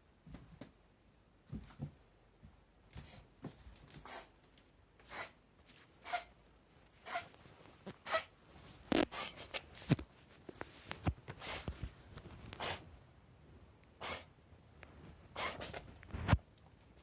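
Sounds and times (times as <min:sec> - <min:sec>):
cat reverse sneezing: 0:12.6 - 0:12.8, 0:14.0 - 0:14.3, 0:15.4 - 0:15.9.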